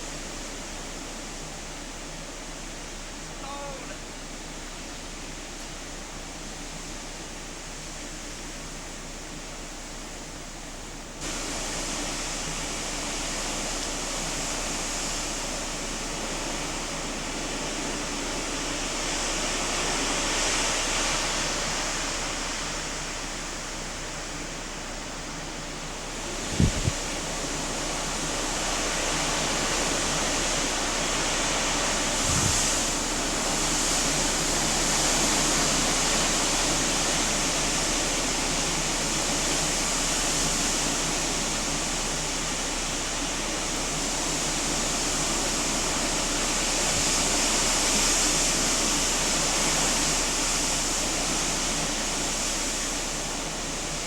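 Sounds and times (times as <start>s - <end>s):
hurricane wind and rain: 11.2s - 54.0s
dull low thumps: 26.4s - 27.0s.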